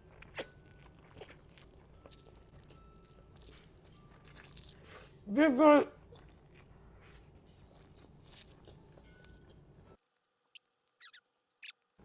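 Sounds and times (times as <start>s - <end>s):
chewing food: 0.0s - 5.2s, 6.0s - 9.6s.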